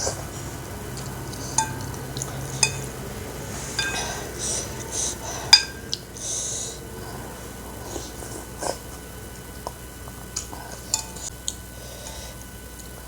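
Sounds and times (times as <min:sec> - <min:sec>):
eating noodle soup: 0:00.0 - 0:13.0
spoon clinking against bowl: 0:01.0 - 0:03.0, 0:03.7 - 0:04.3, 0:05.5 - 0:06.0, 0:10.4 - 0:11.3.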